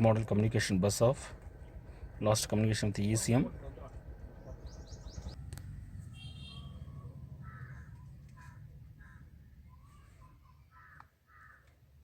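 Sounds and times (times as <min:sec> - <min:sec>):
crows cawing: 0:07.4 - 0:09.4, 0:10.7 - 0:11.8.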